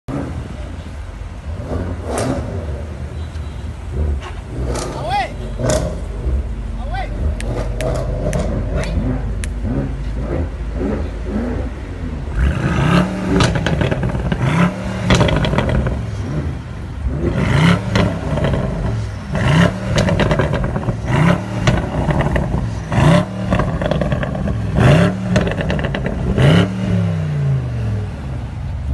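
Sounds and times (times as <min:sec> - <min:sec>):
car engine revving: 0:00.1 - 0:03.1, 0:03.8 - 0:28.9
exhaust crackles and pops: 0:07.2 - 0:10.4, 0:12.4 - 0:16.4, 0:17.2 - 0:26.8.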